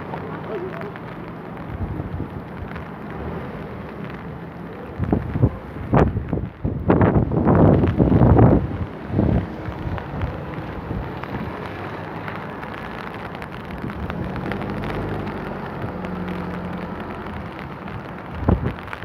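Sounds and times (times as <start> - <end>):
rain falling: 0.0 - 19.0.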